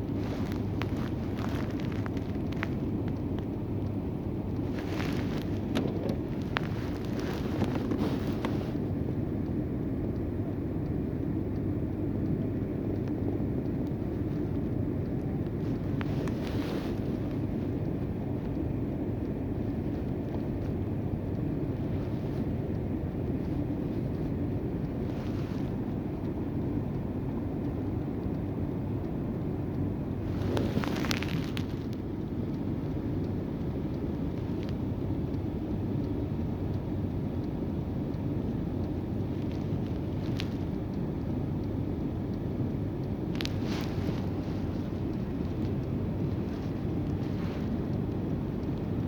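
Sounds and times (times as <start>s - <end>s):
car engine rumble: 0.0s - 49.0s
wind noise on microphone: 0.0s - 49.0s
rustle: 0.1s - 2.8s, 4.6s - 8.9s, 15.6s - 17.8s, 25.0s - 26.0s, 30.2s - 32.0s, 39.3s - 40.8s, 43.3s - 48.1s.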